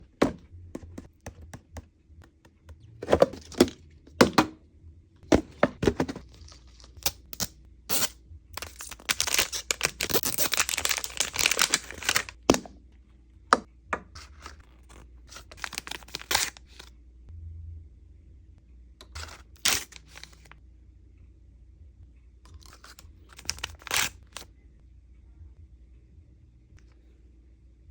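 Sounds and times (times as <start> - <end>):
plastic wrapping tearing and crinkling: 8.6 - 12.4, 14.7 - 16.8, 22.7 - 24.4.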